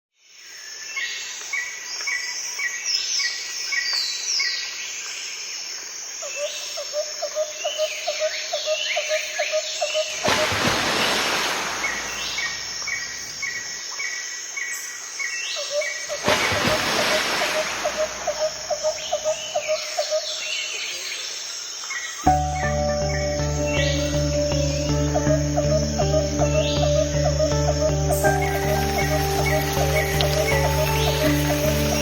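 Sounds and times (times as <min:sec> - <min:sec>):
birds chirping: 0:16.1 - 0:21.3, 0:22.2 - 0:32.0.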